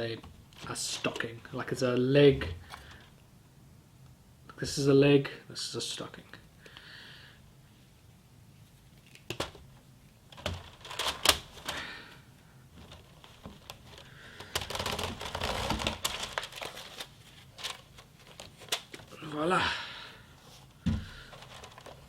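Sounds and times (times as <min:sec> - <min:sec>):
netting rustling and crinkling: 0:10.3 - 0:12.0, 0:12.7 - 0:19.2, 0:20.5 - 0:22.0.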